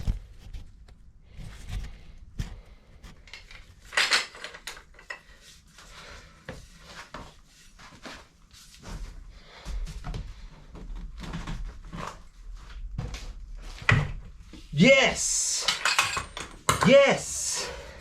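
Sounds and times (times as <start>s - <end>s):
metal tools clinking and scraping: 3.3s - 5.2s, 15.6s - 17.0s.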